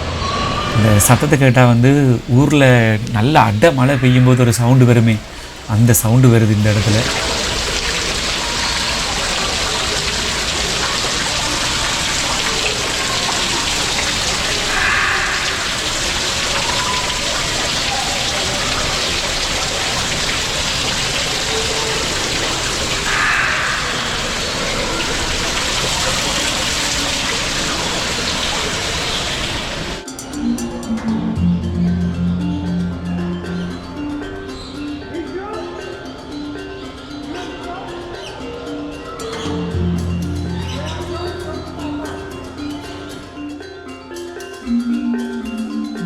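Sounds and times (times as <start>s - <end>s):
rushing water: 0.6s - 30.1s.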